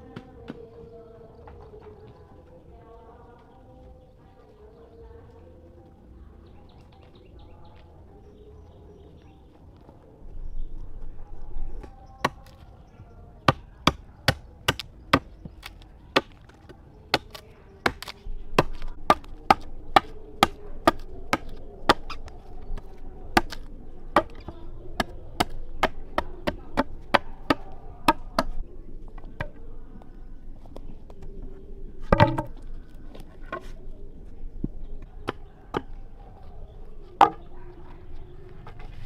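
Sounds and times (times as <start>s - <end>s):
blade chopping wood: 13.5s - 22.3s, 23.4s - 28.6s, 32.1s - 32.6s.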